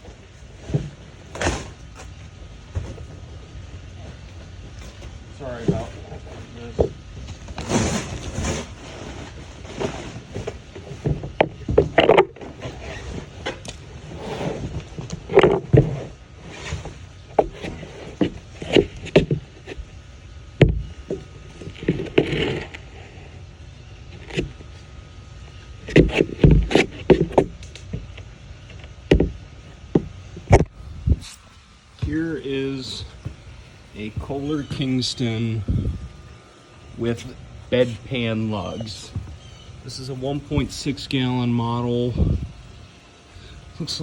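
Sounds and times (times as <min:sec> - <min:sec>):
packaging scraping and rustling: 0:04.1 - 0:11.2.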